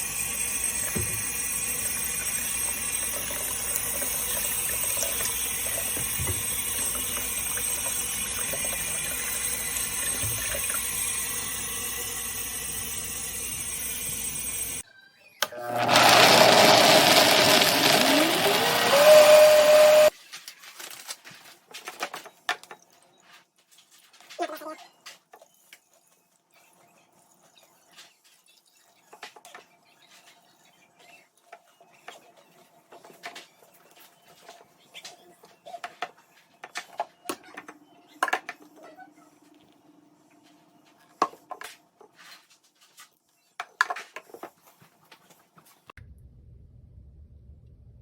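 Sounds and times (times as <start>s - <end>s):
steady low hum: 46.0s - 48.0s.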